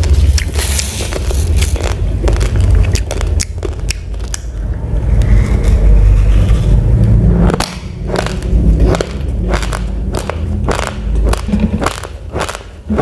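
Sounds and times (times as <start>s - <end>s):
rice grains crunched while chewing: 0.0s - 4.5s, 8.1s - 13.0s
heavy low rumble: 0.0s - 13.0s.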